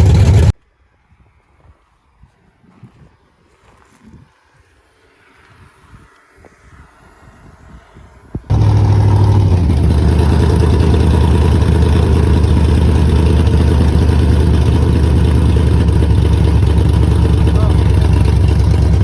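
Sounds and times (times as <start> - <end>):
car engine starting and running: 0.0 - 0.5, 8.5 - 19.0.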